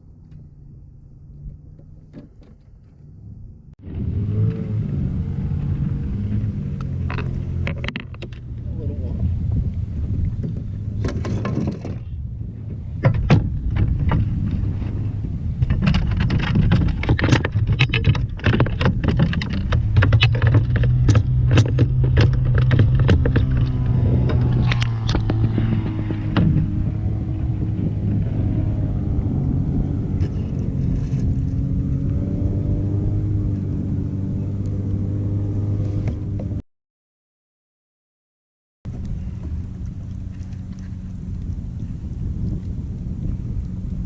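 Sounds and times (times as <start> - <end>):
sharp knocks and clicks: 6.8 - 8.5, 13.0 - 14.3, 15.6 - 26.8.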